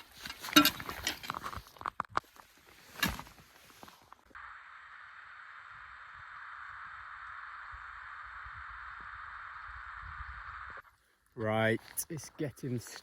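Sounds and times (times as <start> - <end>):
crunching footsteps in snow: 0.0 - 4.4
steady hiss: 3.7 - 10.8.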